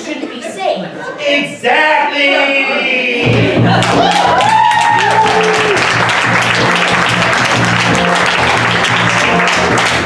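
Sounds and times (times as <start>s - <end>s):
music with bass notes: 3.3s - 4.4s, 5.8s - 10.0s
audience applauding: 3.8s - 10.0s.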